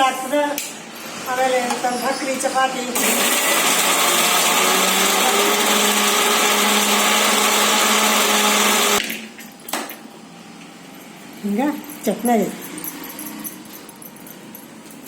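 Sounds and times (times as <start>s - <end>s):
mixer grinder running: 2.8s - 9.1s.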